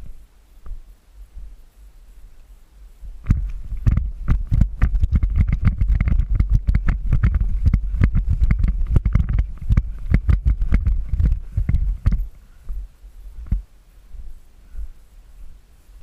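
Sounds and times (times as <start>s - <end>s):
steady low rumble: 0.0s - 16.0s
camera handling thumps and knocks: 3.2s - 12.3s.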